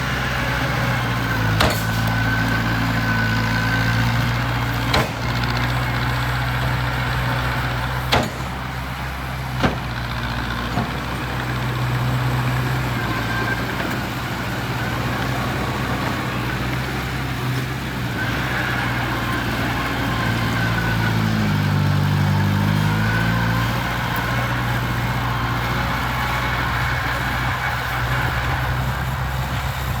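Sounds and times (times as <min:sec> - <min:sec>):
heavy diesel engine running: 0:00.0 - 0:30.0
sharp metallic knocks: 0:01.4 - 0:02.2, 0:04.7 - 0:05.9, 0:08.0 - 0:11.6.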